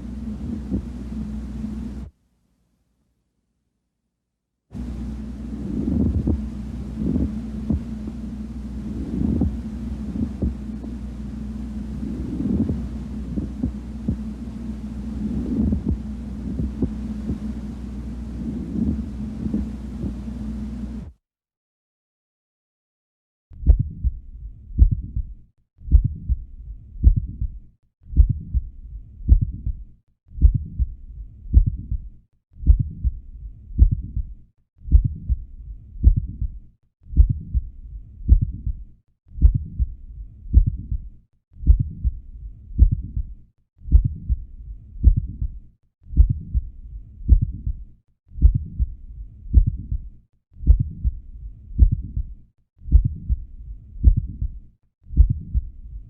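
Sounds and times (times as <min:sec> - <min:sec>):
heart murmur: 0:00.4 - 0:01.0, 0:05.6 - 0:08.1, 0:08.9 - 0:10.9, 0:12.1 - 0:14.4, 0:15.2 - 0:17.6, 0:18.5 - 0:20.3, 0:23.6 - 0:25.3, 0:25.9 - 0:47.8, 0:48.4 - 0:56.0
heartbeats through stethoscope: 0:00.4 - 0:01.0, 0:05.7 - 0:08.2, 0:08.9 - 0:10.9, 0:11.9 - 0:14.4, 0:15.2 - 0:17.6, 0:18.5 - 0:20.3, 0:23.6 - 0:56.0.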